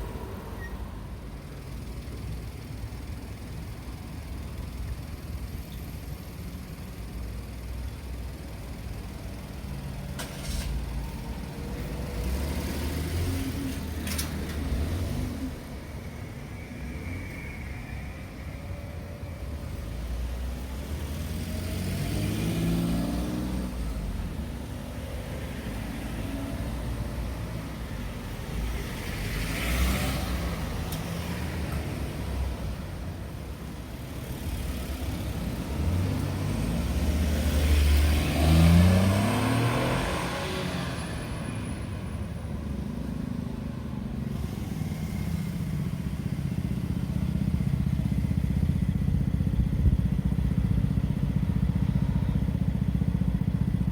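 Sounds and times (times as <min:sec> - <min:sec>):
cars accelerating and passing: 0:10.2 - 0:33.2, 0:33.9 - 0:48.9.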